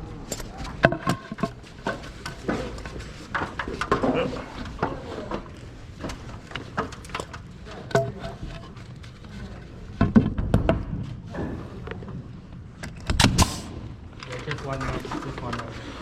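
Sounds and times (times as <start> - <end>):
wooden trim pieces knocking: 0.4 - 8.6.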